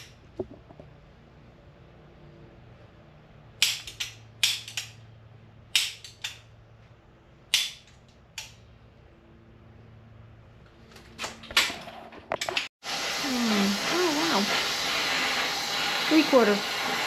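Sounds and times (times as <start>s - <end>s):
tools knocking: 0.4s - 0.9s.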